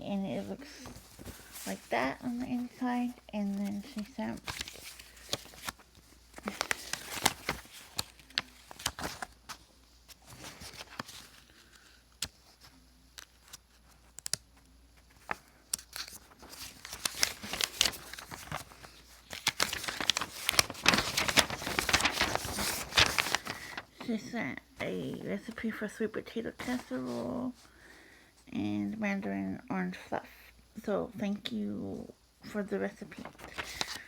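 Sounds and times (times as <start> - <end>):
paper and card rustling: 0.2 - 27.7, 32.6 - 34.0
sharp paper crackles: 0.7 - 12.6, 15.1 - 24.2, 33.1 - 34.0.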